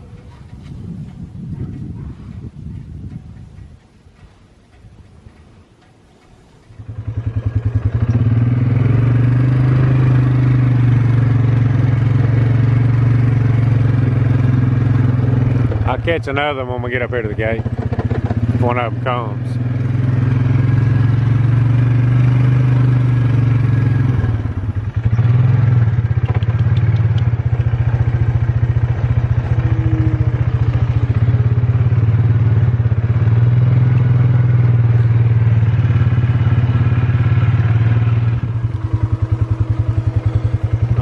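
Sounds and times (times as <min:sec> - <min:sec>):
atv engine running: 0:00.0 - 0:41.0.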